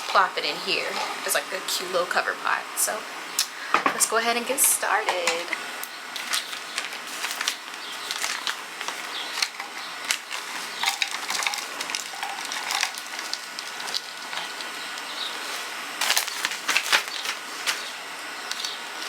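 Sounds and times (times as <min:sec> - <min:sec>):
potting mix rustling: 0:00.0 - 0:02.2, 0:04.0 - 0:19.0.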